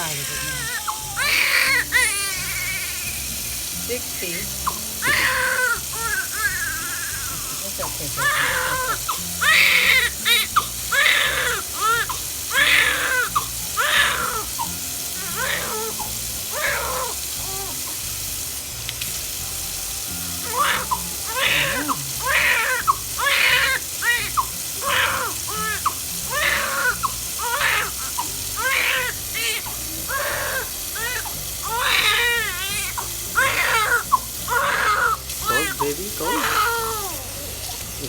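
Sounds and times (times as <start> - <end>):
baby crying: 0.0 - 3.3, 4.4 - 18.0, 20.4 - 37.9.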